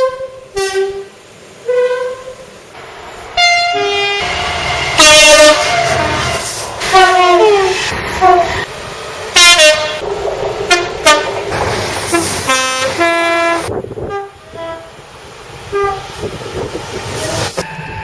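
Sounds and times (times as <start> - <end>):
train horn blasts: 0.0 - 2.4, 3.4 - 8.6, 9.4 - 10.0, 10.7 - 11.3, 12.1 - 14.9, 15.7 - 16.1
two-tone train horn: 0.0 - 2.4, 3.4 - 8.6, 9.4 - 10.0, 10.7 - 11.3, 12.1 - 14.9, 15.7 - 16.1
trains running: 0.0 - 18.0.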